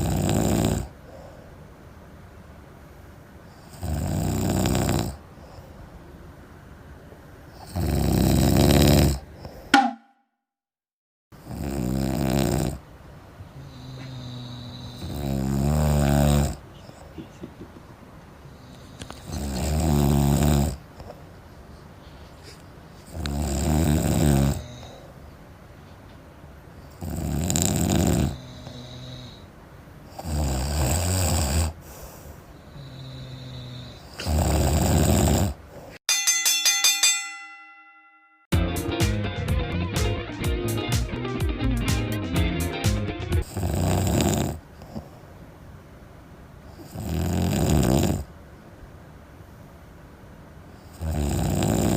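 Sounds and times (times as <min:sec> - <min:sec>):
person snoring loudly: 0:00.0 - 0:00.9, 0:03.7 - 0:05.2, 0:07.6 - 0:09.3, 0:11.4 - 0:12.8, 0:13.5 - 0:16.6, 0:18.5 - 0:20.8, 0:23.1 - 0:25.0, 0:27.0 - 0:29.5, 0:30.2 - 0:31.8, 0:32.8 - 0:35.6, 0:42.3 - 0:44.6, 0:46.8 - 0:48.3, 0:51.0 - 0:51.9
quiet breathing: 0:00.8 - 0:01.8, 0:05.0 - 0:06.2, 0:09.2 - 0:09.7, 0:13.4 - 0:17.4, 0:18.3 - 0:19.8, 0:20.4 - 0:23.2, 0:24.5 - 0:25.5, 0:28.1 - 0:30.3, 0:31.7 - 0:34.4, 0:44.6 - 0:45.5.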